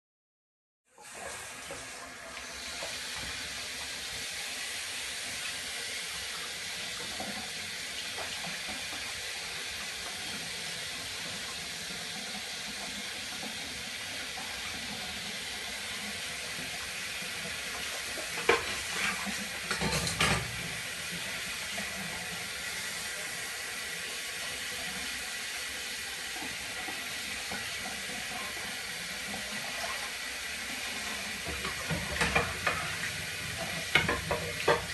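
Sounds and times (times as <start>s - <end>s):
tap water running into sink: 1.0s - 34.9s
dishes clinking: 18.4s - 20.6s, 31.5s - 34.9s.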